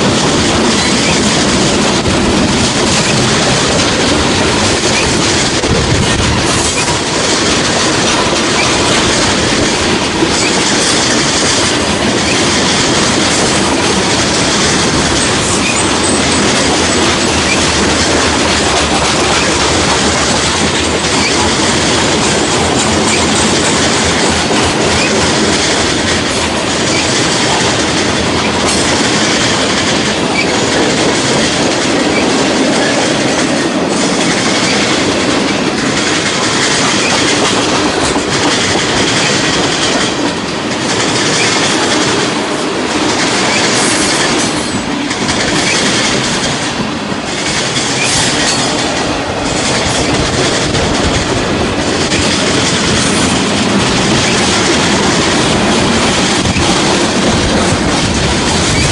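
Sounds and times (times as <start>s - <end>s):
train wheels clattering on rails: 0.0s - 58.9s.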